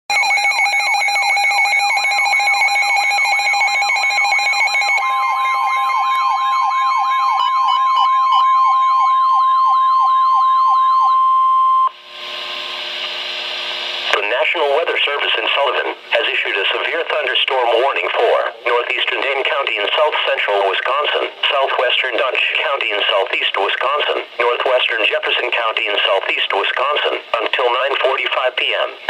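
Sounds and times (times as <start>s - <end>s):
steady warning tone: 0.1s - 13.0s
electronic siren sweeping in pitch: 0.2s - 11.9s
radio hiss: 12.1s - 29.0s.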